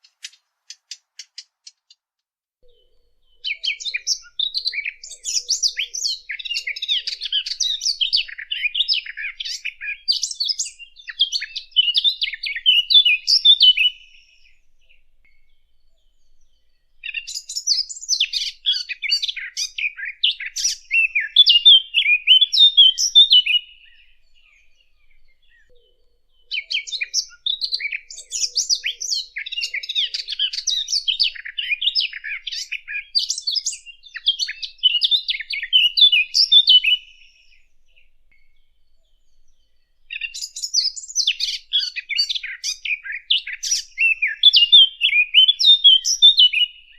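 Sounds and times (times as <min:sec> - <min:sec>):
warbler singing: 0:02.6 - 0:46.9.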